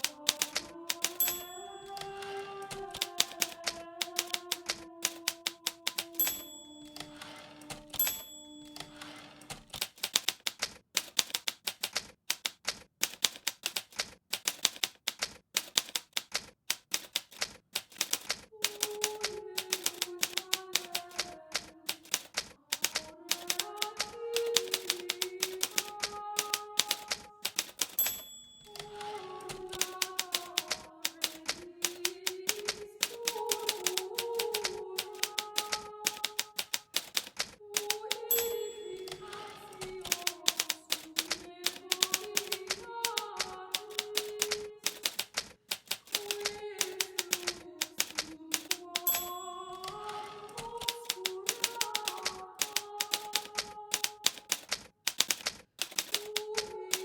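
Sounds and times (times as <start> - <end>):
typewriter bell ringing: 0.0 - 10.5, 21.9 - 56.4
typewriter carriage return: 0.0 - 57.0
typewriter keys striking: 0.0 - 57.0.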